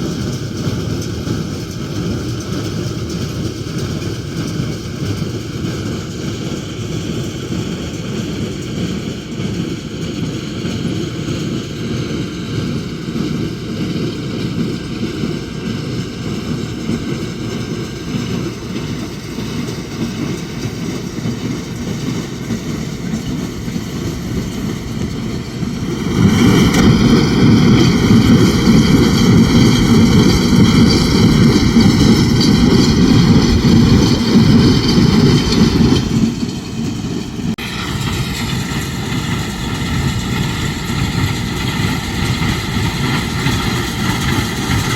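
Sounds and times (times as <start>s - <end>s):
tractor engine running: 0.0s - 44.9s.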